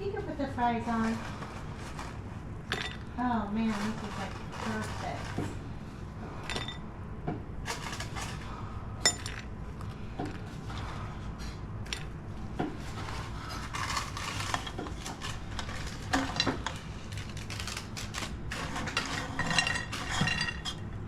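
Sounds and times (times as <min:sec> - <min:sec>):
utensils clinking on plates: 0:18.6 - 0:20.9.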